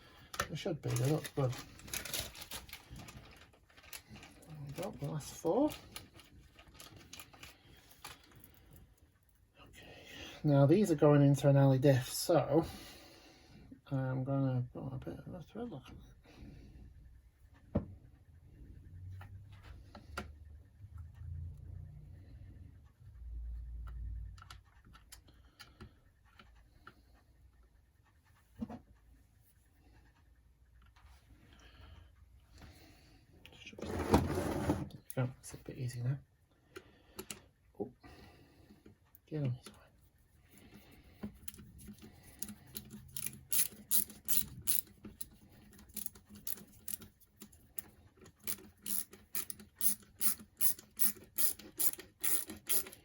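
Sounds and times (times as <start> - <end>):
hand ratchet clicking: 41.4 - 53.0.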